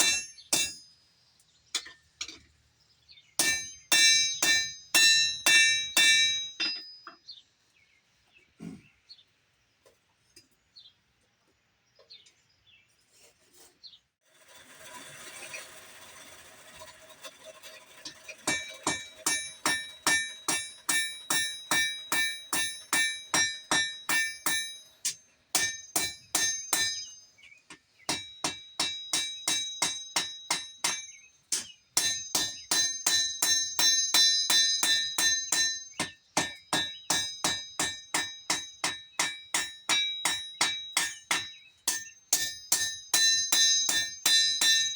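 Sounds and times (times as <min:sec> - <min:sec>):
hammer ringing on anvil: 0:00.0 - 0:00.9, 0:03.4 - 0:07.2, 0:18.5 - 0:27.5, 0:28.1 - 0:44.9.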